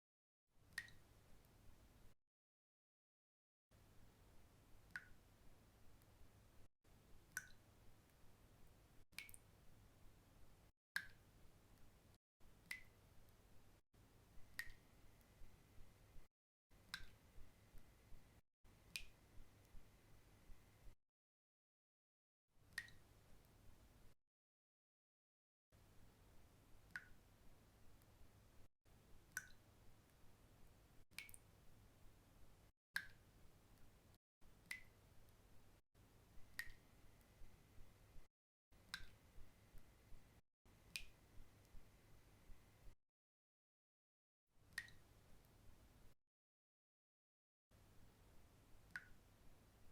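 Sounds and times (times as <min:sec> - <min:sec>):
water drops plinking into water: 0:00.7 - 0:01.1, 0:07.3 - 0:07.7, 0:09.2 - 0:09.5, 0:11.0 - 0:11.2, 0:12.6 - 0:13.0, 0:14.4 - 0:15.5, 0:16.9 - 0:18.2, 0:18.9 - 0:19.9, 0:22.7 - 0:23.0, 0:29.3 - 0:29.7, 0:31.2 - 0:31.5, 0:33.0 - 0:33.2, 0:34.6 - 0:35.0, 0:36.4 - 0:36.9, 0:38.8 - 0:39.9, 0:40.9 - 0:41.8, 0:44.7 - 0:45.0.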